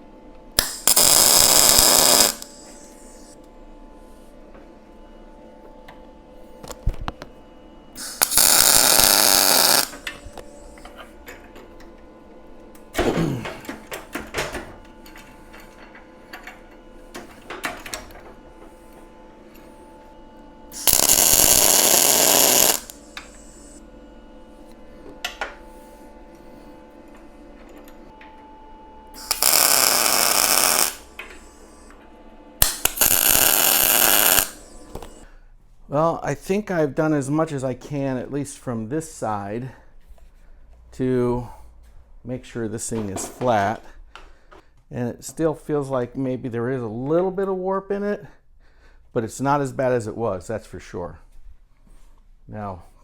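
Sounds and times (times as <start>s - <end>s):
welder crackling: 0.6s - 3.3s, 8.0s - 10.4s, 20.7s - 23.8s, 29.2s - 31.8s, 32.6s - 35.2s.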